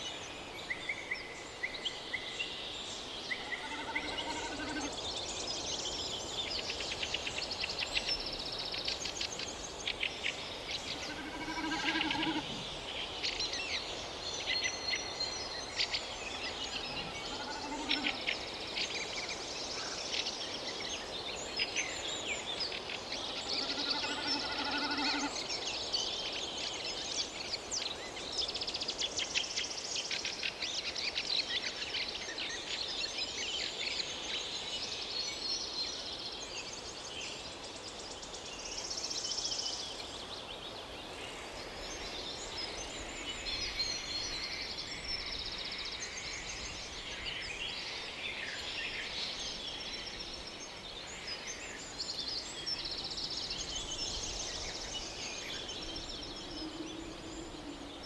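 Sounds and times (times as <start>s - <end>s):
birds chirping and trilling: 3.3s - 5.1s, 10.7s - 12.9s, 16.4s - 18.3s, 23.2s - 25.5s, 41.8s - 58.0s
low drawn-out animal call: 3.4s - 5.0s, 10.9s - 12.9s, 16.7s - 18.4s, 23.4s - 25.4s.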